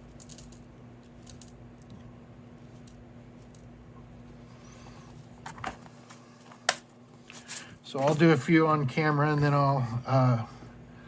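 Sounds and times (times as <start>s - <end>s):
faint low hum: 0.0s - 11.0s
small pieces clicking: 0.2s - 0.6s, 1.2s - 1.9s.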